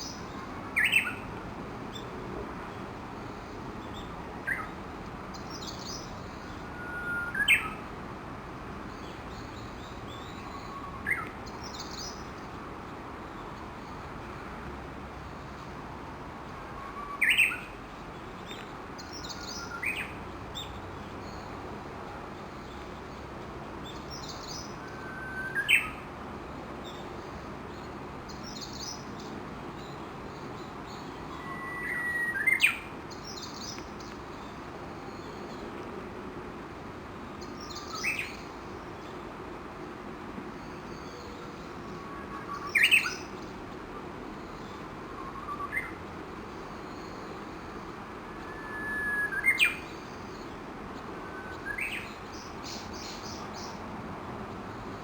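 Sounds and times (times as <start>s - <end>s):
steady background hiss: 0.0s - 55.0s.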